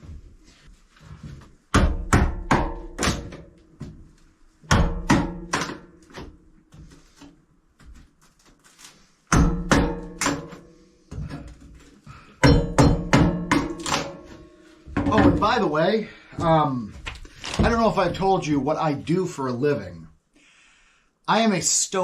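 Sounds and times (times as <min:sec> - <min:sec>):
hammer striking wood: 0:01.7 - 0:03.5, 0:04.6 - 0:06.3, 0:09.3 - 0:10.6, 0:12.4 - 0:15.4.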